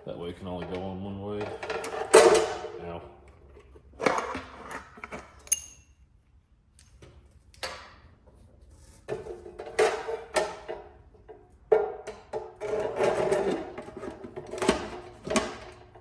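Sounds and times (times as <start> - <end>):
metal parts knocking and clinking: 4.1 - 6.0.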